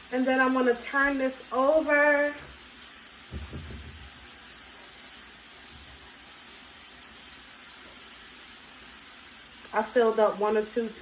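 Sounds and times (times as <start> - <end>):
food sizzling in hot oil: 0.0 - 11.0
soft low thump: 3.3 - 4.2.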